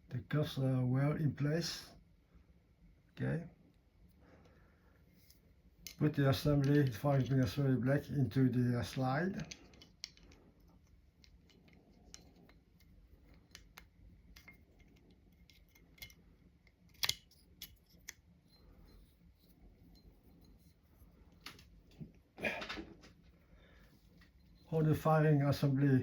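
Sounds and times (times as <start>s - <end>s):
metal parts clicking: 9.4s - 19.1s.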